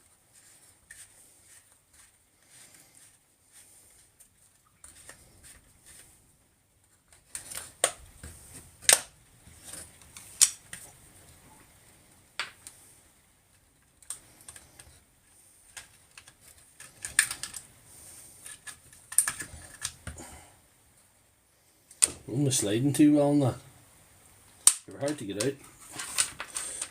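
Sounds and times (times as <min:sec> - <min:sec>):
tools and plastic parts clicking: 0:06.8 - 0:10.9, 0:13.6 - 0:15.0, 0:15.7 - 0:17.7, 0:18.4 - 0:20.2, 0:24.6 - 0:26.9.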